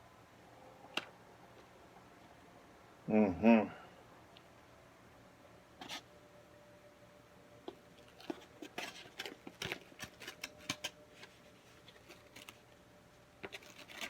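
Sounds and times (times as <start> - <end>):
food containers rustling: 7.7 - 12.8.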